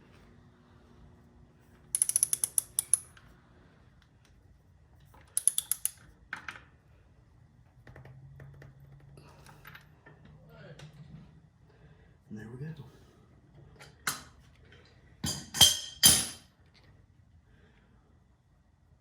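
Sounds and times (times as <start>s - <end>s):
ratchet wrench clicking: 1.9s - 3.1s, 5.4s - 6.0s.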